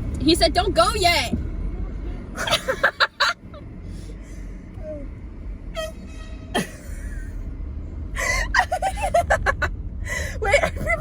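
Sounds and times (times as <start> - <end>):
car engine rumble: 0.0 - 11.0
air horn blast: 5.7 - 6.6.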